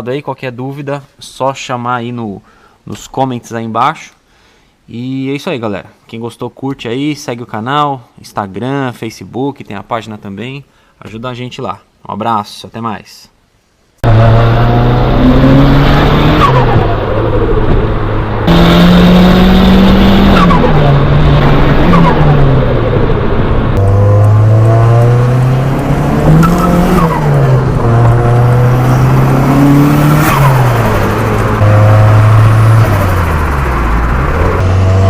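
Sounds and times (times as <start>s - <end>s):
car engine revving: 14.0s - 35.0s.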